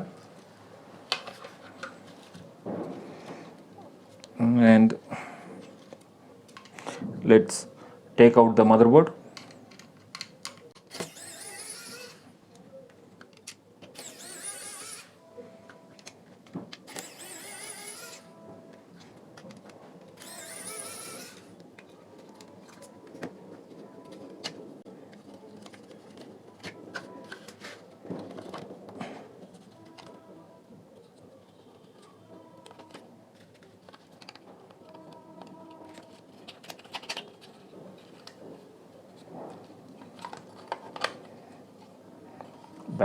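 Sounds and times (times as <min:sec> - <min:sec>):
plastic parts clicking and tapping: 0:09.3 - 0:11.3, 0:15.7 - 0:17.4, 0:18.1 - 0:30.3, 0:31.9 - 0:38.6, 0:39.2 - 0:42.8
small electric motor whirring: 0:10.8 - 0:12.4, 0:13.9 - 0:15.2, 0:16.9 - 0:18.4, 0:20.2 - 0:21.6.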